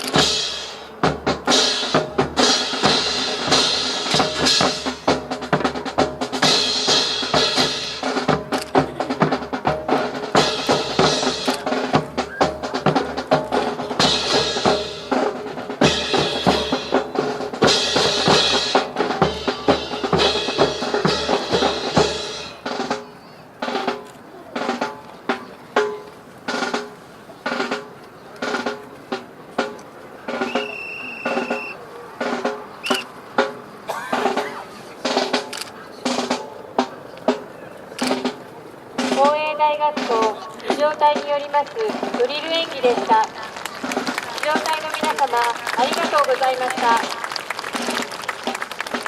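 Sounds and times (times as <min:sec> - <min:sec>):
drum-led music: 0:00.0 - 0:49.0.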